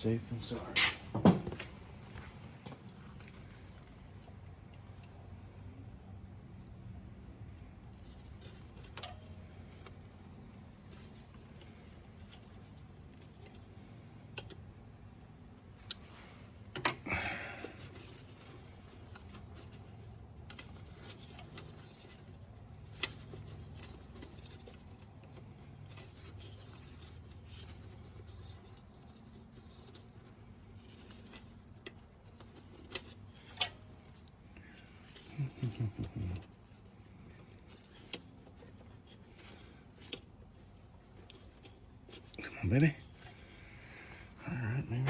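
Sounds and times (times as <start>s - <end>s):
low steady hum: 0.0s - 45.0s
hand tools and metal parts clinking: 15.7s - 45.0s.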